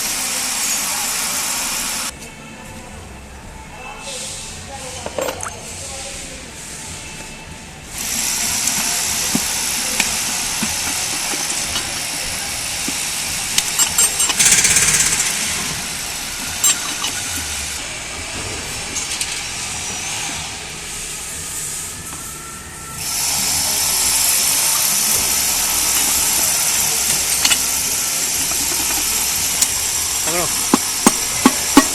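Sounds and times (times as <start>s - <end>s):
compressed air hissing: 8.0s - 17.8s, 23.0s - 31.9s
metal parts clicking and knocking: 8.6s - 15.8s, 16.4s - 17.7s, 25.3s - 31.9s.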